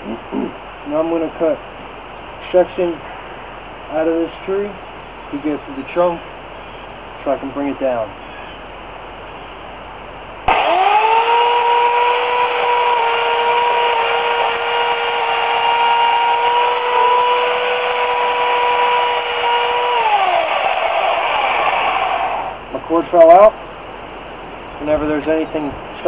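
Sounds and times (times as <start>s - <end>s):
electric chainsaw whining: 10.5s - 22.6s.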